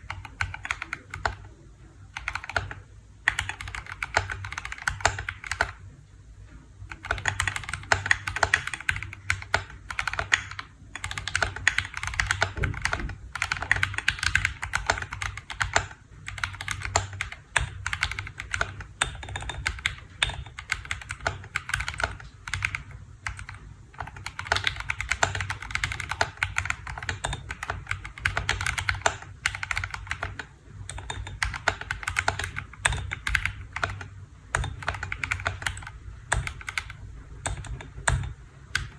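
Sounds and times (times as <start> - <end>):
mechanical keyboard typing: 0.0 - 5.8, 6.8 - 38.9.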